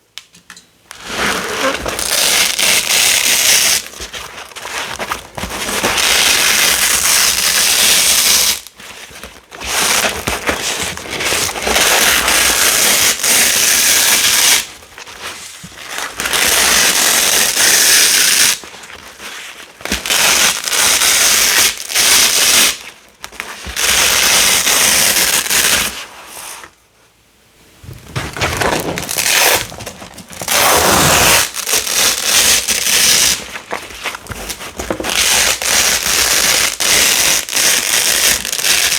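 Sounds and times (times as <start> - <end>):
velcro tape ripping apart: 0.9 - 3.9, 6.0 - 8.7, 11.4 - 14.7, 16.3 - 18.6, 20.0 - 22.8, 30.4 - 33.4, 35.1 - 38.9.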